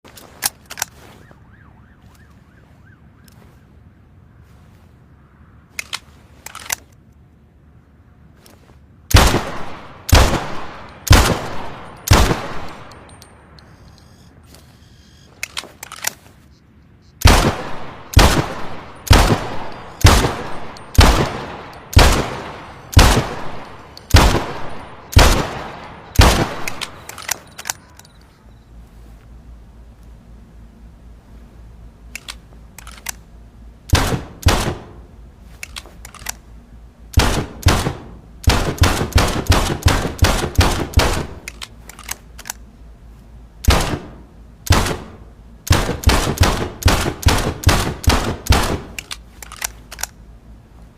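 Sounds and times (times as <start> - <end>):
pistol clicks: 5.7 - 7.0, 17.2 - 28.3, 32.0 - 33.3, 35.6 - 36.5, 37.1 - 42.7, 45.7 - 50.2
pistol shots: 9.1 - 13.0, 17.2 - 27.6, 33.9 - 35.0, 37.2 - 41.5, 43.7 - 49.0.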